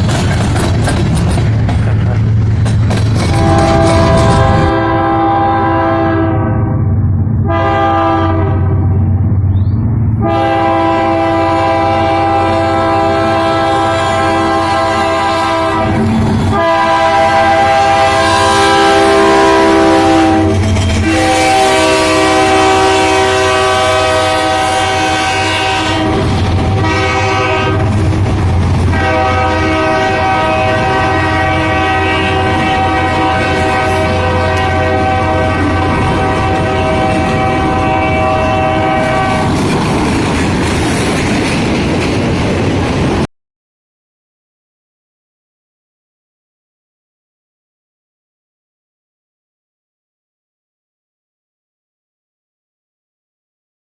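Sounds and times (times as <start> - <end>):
low train rumble: 0.0 - 43.3
locomotive air horn blasts: 3.3 - 8.9, 10.2 - 28.2, 28.9 - 39.5.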